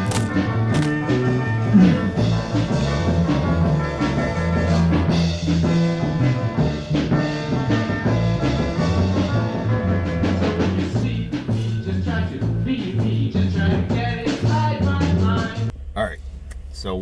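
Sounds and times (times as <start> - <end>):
upbeat band music with brass: 2.0 - 15.7.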